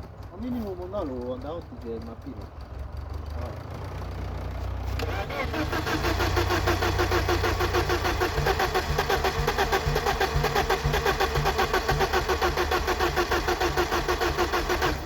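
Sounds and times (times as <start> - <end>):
starter motor cranking engine: 4.3 - 15.0.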